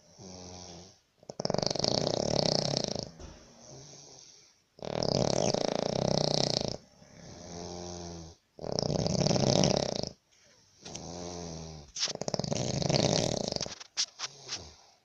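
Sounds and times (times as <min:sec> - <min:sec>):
man snoring heavily: 0:00.0 - 0:10.2, 0:10.9 - 0:13.6
droning breath: 0:03.1 - 0:04.7.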